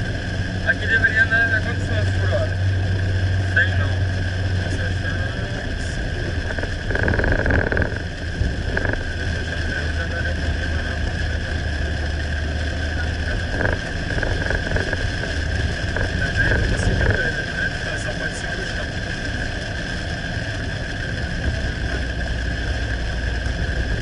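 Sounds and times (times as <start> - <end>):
car road and engine noise: 0.0 - 24.0.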